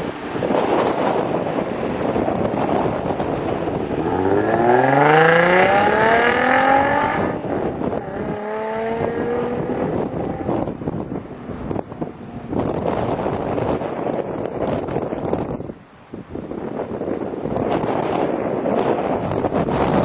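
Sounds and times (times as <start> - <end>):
wind noise on microphone: 0.0 - 20.0
car engine accelerating: 2.6 - 14.4.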